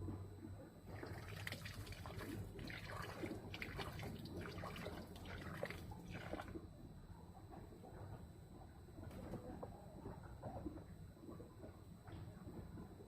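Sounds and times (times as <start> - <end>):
chicken throat crackling and gurgling: 0.9 - 6.6.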